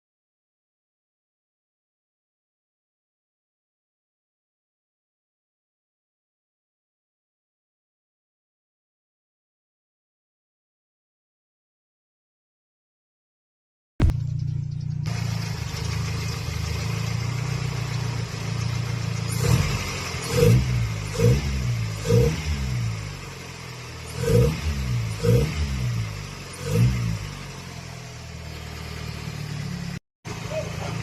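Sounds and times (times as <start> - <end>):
car engine idling and revving: 14.0 - 31.0.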